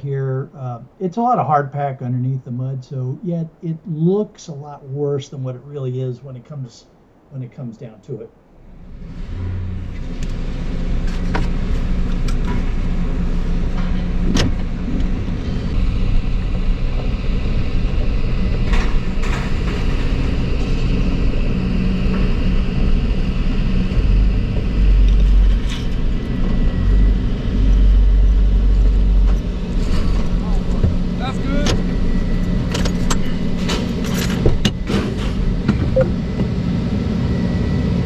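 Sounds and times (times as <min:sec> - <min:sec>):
vehicle engine rumbling: 0:00.0 - 0:38.0
vehicle knocks and rattles: 0:16.4 - 0:36.0.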